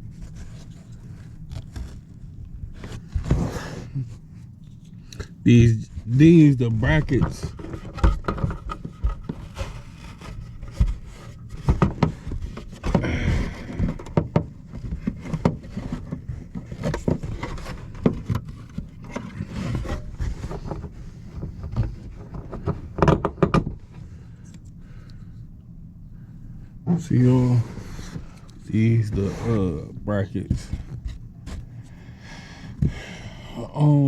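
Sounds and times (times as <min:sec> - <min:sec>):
plastic brackets clicking and scraping: 0:06.8 - 0:23.8.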